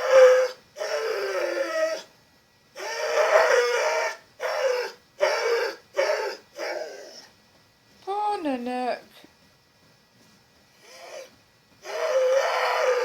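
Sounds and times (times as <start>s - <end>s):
dog howling moans: 0.0s - 2.1s, 2.8s - 7.3s, 10.8s - 13.0s.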